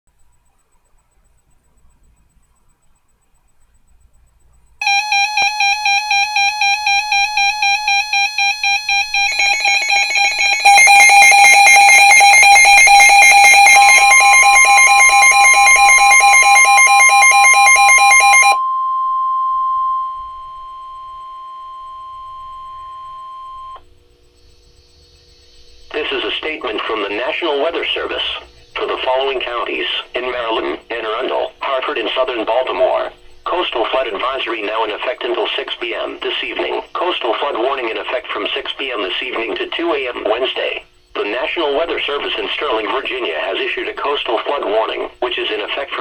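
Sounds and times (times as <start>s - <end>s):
steady warning alarm tone: 0.1s - 46.0s
fast warbling electronic beeps: 4.8s - 18.6s.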